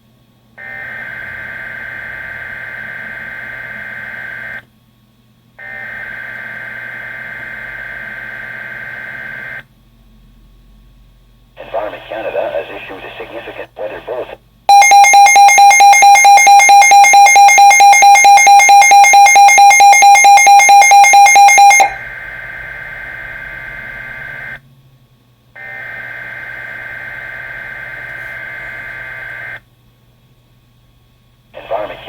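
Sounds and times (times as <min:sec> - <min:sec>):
data-like warbling tones: 0:14.7 - 0:22.0
pulsing electronic alert beep: 0:14.7 - 0:22.0.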